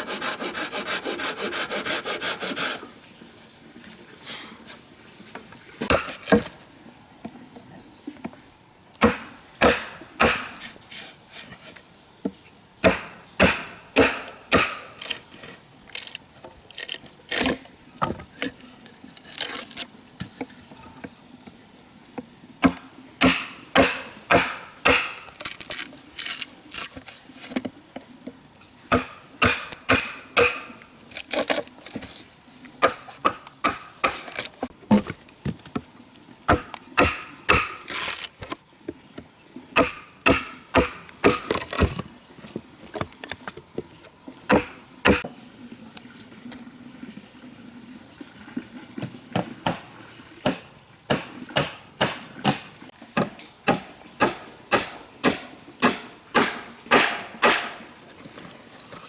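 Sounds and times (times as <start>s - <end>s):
wood being chopped: 5.8s - 6.6s, 9.0s - 10.8s, 12.8s - 19.8s, 22.6s - 27.1s, 28.9s - 32.2s, 32.8s - 35.8s, 36.5s - 38.6s, 39.8s - 43.2s, 44.5s - 45.2s, 50.4s - 57.8s.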